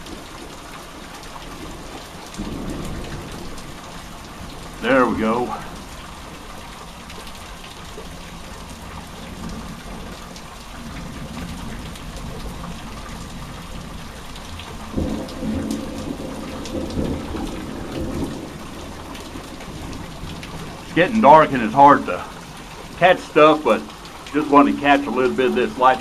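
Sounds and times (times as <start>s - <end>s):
steady rain: 0.0s - 26.0s
thunder rumbling: 2.4s - 6.2s, 14.8s - 26.0s.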